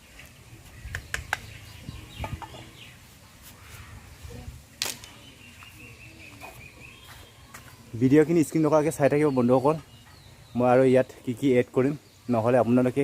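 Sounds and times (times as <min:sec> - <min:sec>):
bird calls: 0:00.0 - 0:13.0
chickens clucking: 0:01.0 - 0:03.0.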